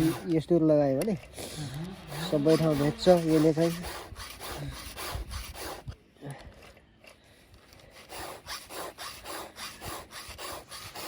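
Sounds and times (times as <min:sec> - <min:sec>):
file rasping on chainsaw chain: 0:00.0 - 0:00.4, 0:01.2 - 0:06.0, 0:07.8 - 0:11.0.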